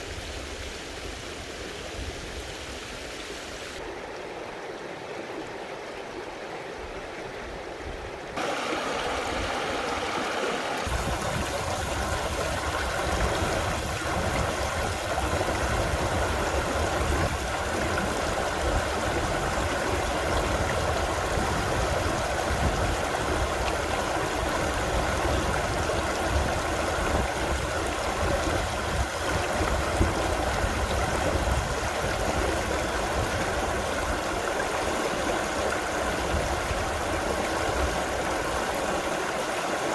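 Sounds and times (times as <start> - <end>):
stream rushing over rocks: 8.4 - 39.9.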